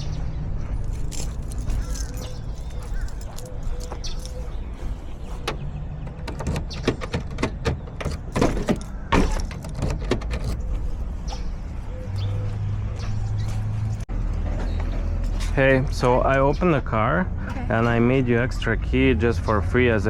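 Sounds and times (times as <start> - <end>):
sharp clicks and knocks: 5.4 - 11.5.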